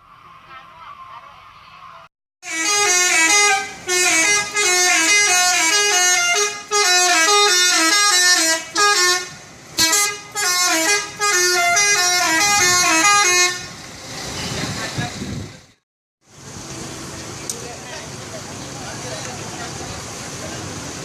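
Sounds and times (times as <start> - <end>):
multi-tone bus horn tune: 2.4 - 13.8.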